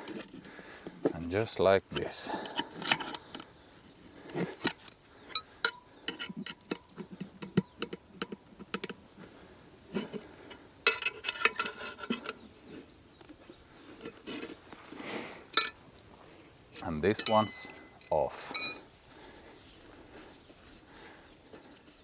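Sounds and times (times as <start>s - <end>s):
tire levers clinking on metal rim: 1.9s - 3.5s, 4.2s - 9.0s, 10.5s - 12.5s, 15.5s - 15.8s, 16.7s - 19.0s.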